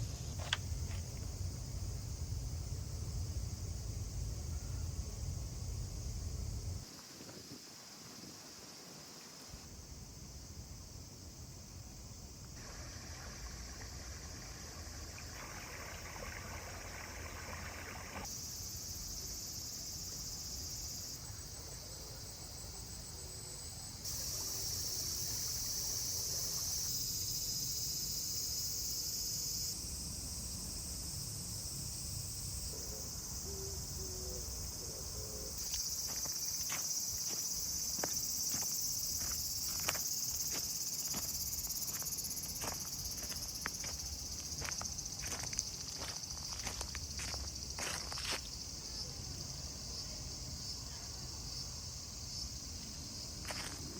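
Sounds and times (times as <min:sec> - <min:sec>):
high-pitched insect chorus: 0:00.0 - 0:53.9
low rumble: 0:00.6 - 0:06.8.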